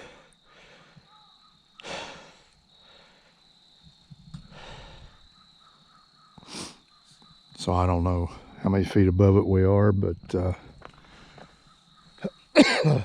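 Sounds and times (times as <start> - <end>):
person breathing heavily: 0.0 - 3.7, 4.4 - 5.4, 6.4 - 6.9, 11.0 - 11.8
crickets trilling: 0.0 - 13.0.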